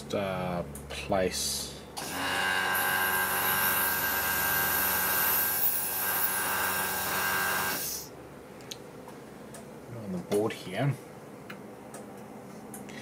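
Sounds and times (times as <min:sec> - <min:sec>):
small motor whirring: 0:02.0 - 0:08.1.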